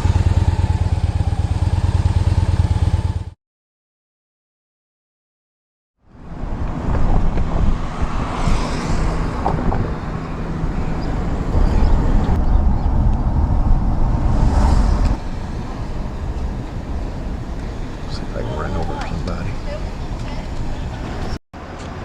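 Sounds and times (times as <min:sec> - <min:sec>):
road traffic noise: 0:00.0 - 0:03.4, 0:06.0 - 0:22.0
wind buffeting microphone: 0:06.2 - 0:21.4.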